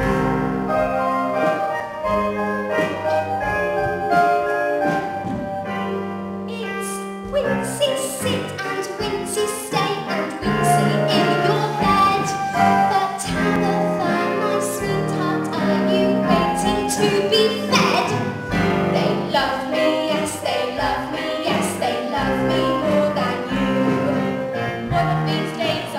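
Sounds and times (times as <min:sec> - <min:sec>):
instrumental accompaniment: 0:00.0 - 0:25.9
voices singing a melody: 0:06.6 - 0:25.9.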